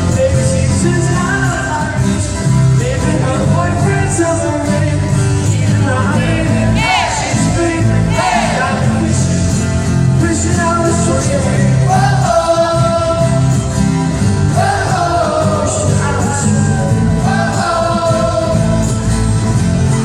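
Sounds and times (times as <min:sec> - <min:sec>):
live pop-rock band playing: 0:00.0 - 0:20.0
person singing: 0:14.6 - 0:19.1.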